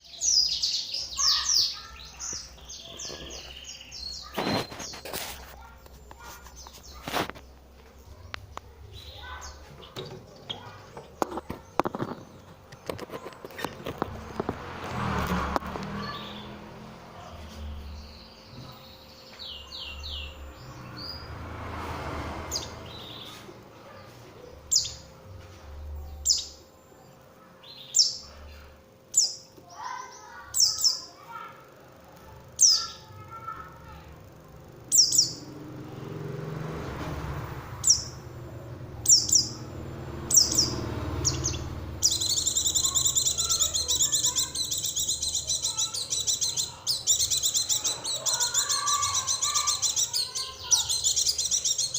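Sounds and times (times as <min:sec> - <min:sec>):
high-pitched bird chattering song: 0:00.0 - 0:14.4, 0:24.6 - 0:25.1, 0:26.1 - 0:26.8, 0:27.6 - 0:31.5, 0:32.6 - 0:34.0, 0:34.8 - 0:35.6, 0:37.8 - 0:38.2, 0:39.0 - 0:51.9
sharp high falling bird calls: 0:00.0 - 0:14.4, 0:37.4 - 0:51.9.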